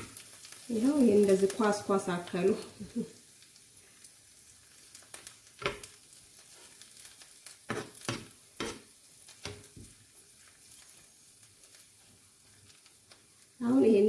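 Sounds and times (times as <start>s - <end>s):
faint sizzle: 0.0s - 14.0s
spoon scraping a frying pan: 5.2s - 11.1s.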